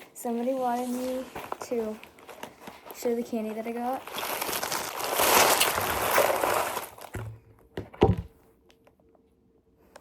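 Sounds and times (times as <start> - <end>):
candy bag crinkling: 0.7 - 7.4
thumps: 7.1 - 8.4.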